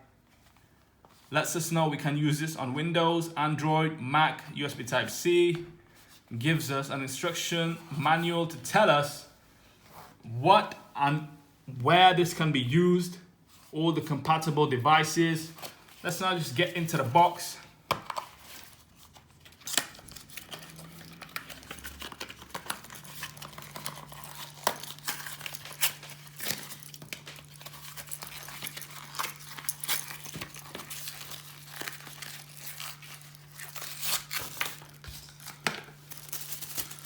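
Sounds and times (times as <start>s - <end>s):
packaging crinkling and tearing: 18.1s - 37.0s.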